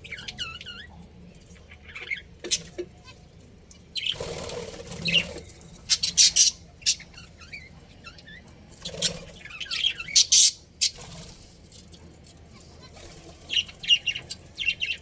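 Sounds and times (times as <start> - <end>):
budgerigars chirping: 0.0 - 1.0, 1.7 - 2.7, 4.9 - 11.1, 13.5 - 15.0.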